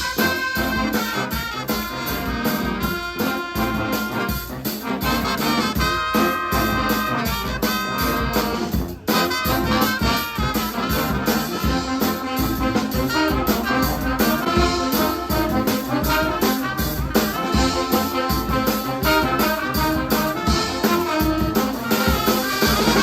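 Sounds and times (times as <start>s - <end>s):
brass band playing: 0.0s - 23.0s.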